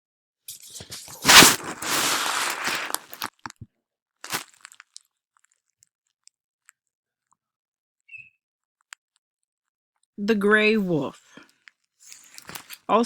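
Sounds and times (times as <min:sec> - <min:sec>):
crackling rustle: 0:00.7 - 0:03.5, 0:04.2 - 0:05.6, 0:11.4 - 0:12.9.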